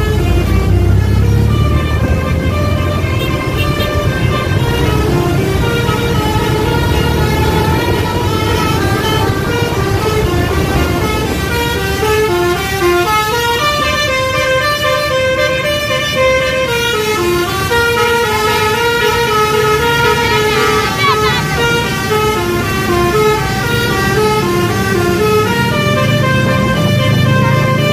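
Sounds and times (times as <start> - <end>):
bus engine running: 0.0 - 27.9
bus horn playing melody: 0.0 - 27.9.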